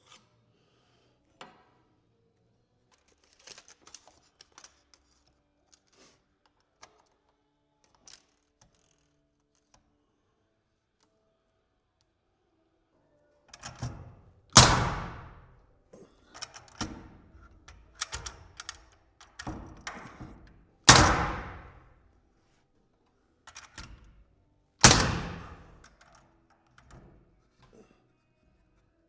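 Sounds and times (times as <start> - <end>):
loud sharp bangs: 14.6 - 15.4, 20.9 - 21.8, 24.8 - 25.7.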